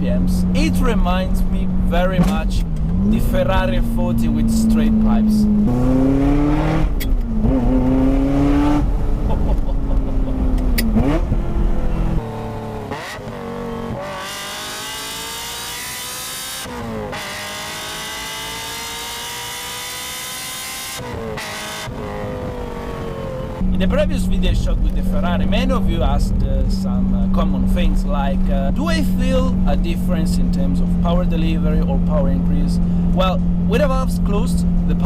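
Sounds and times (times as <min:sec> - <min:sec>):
car engine accelerating hard: 0:00.0 - 0:35.0.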